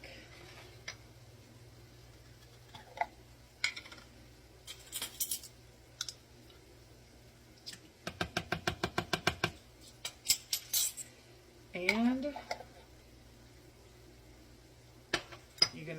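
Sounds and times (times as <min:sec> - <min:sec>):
spoon scraping jar and bowl: 0:10.0 - 0:11.1.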